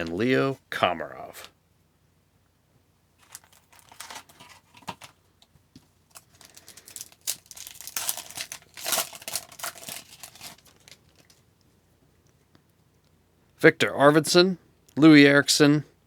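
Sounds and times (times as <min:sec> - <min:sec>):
wrapper tearing and crinkling: 0:03.2 - 0:05.2, 0:06.1 - 0:11.4.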